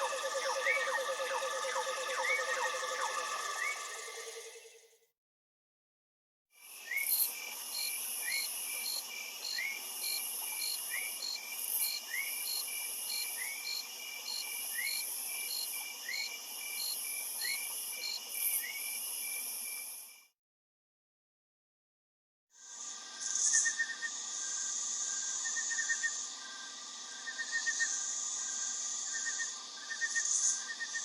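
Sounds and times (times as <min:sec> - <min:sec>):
insects trilling: 0:00.0 - 0:04.8
pulsing insect chirp: 0:00.0 - 0:04.8
short rising insect call: 0:00.0 - 0:04.9.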